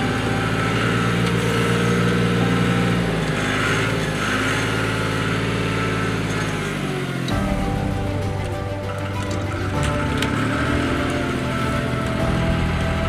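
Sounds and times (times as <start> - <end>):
loader engine running: 0.0 - 13.0.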